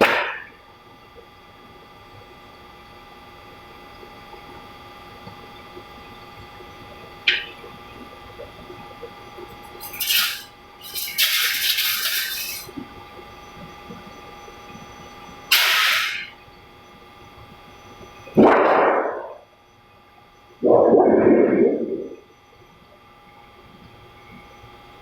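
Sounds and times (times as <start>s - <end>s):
press machine humming: 6.8s - 17.0s.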